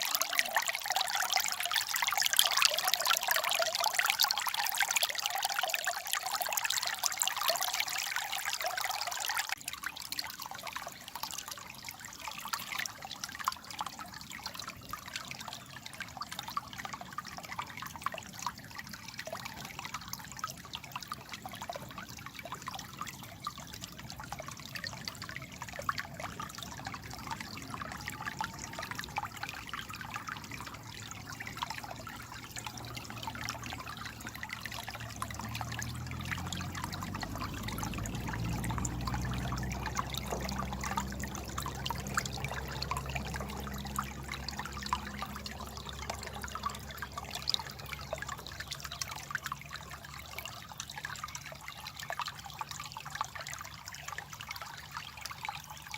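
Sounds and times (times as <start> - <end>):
stream water babbling: 0.0 - 55.9.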